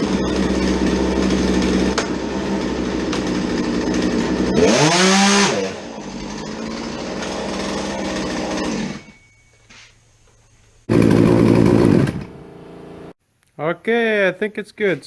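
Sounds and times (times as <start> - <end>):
chainsaw idling and revving: 0.0 - 9.0, 10.9 - 12.5.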